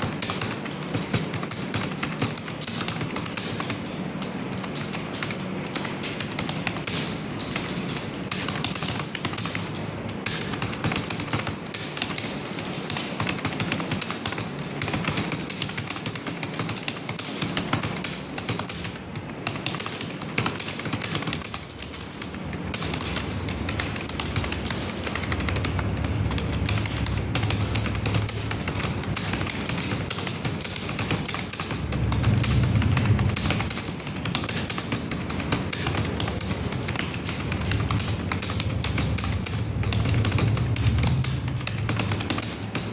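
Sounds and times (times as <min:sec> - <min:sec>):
fast keyboard typing: 0:00.0 - 0:42.9
low hum: 0:21.8 - 0:30.1, 0:31.5 - 0:34.0, 0:36.0 - 0:42.9.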